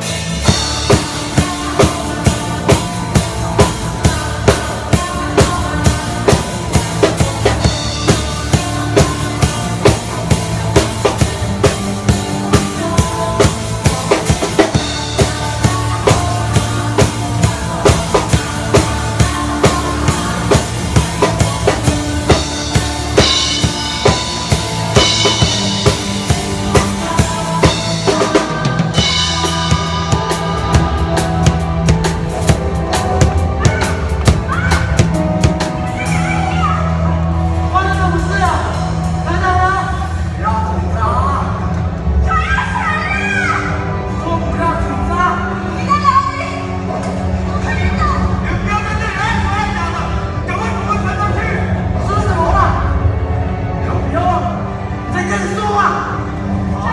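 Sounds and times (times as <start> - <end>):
drum kit playing a steady beat: 0.0 - 39.6
sustained low notes: 0.0 - 42.2.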